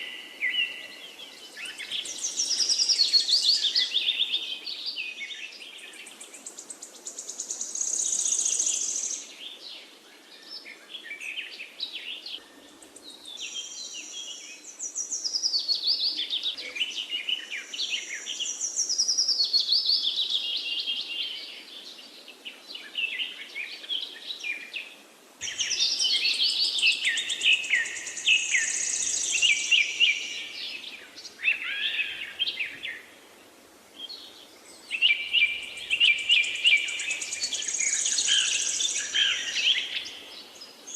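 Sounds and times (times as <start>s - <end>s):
birds chirping and singing: 25.4s - 33.1s, 34.0s - 40.9s.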